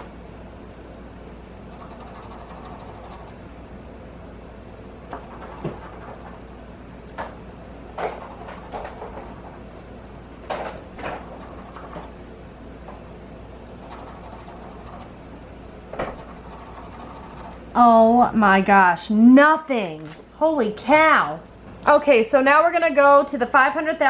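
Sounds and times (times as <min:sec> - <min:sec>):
lottery ticket being scratched: 0:01.6 - 0:03.4, 0:05.1 - 0:06.5, 0:08.0 - 0:09.5, 0:11.0 - 0:12.2, 0:13.8 - 0:15.2, 0:16.0 - 0:17.8.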